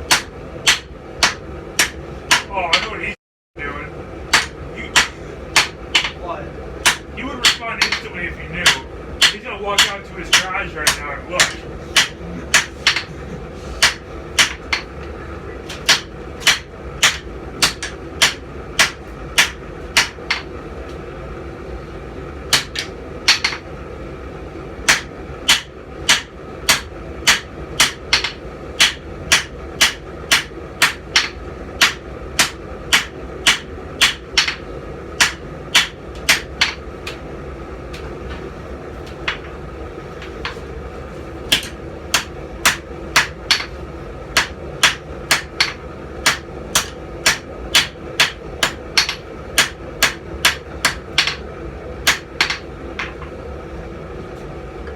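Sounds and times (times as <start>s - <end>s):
steady low hum: 0.0s - 54.9s
hammer striking hot steel on anvil: 0.1s - 2.9s, 4.3s - 6.2s, 6.8s - 13.1s, 13.8s - 14.9s, 15.7s - 20.5s, 22.5s - 23.6s, 24.9s - 34.6s, 35.2s - 37.2s, 41.5s - 43.8s, 44.4s - 51.4s, 52.0s - 53.2s.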